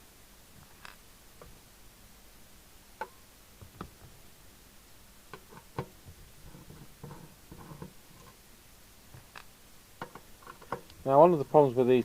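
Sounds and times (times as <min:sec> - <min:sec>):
rustling: 0:05.3 - 0:12.0.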